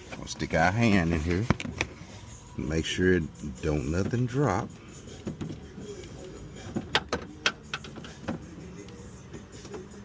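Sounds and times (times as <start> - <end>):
light clicks and taps in car door: 5.2 - 9.0.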